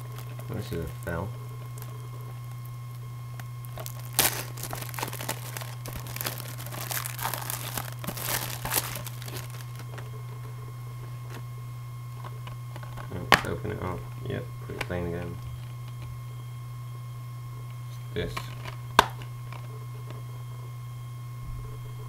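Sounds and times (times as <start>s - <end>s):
plastic wrapping crinkling and tearing: 0.0s - 13.8s, 18.3s - 20.2s
low electrical hum: 0.0s - 22.0s.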